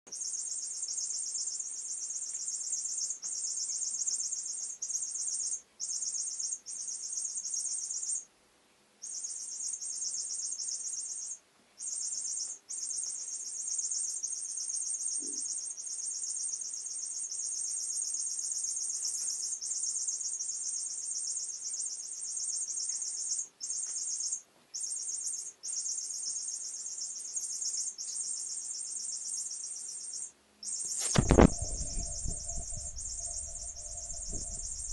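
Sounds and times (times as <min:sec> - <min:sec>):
cat toy squeaking chirps: 0:09.0 - 0:34.9.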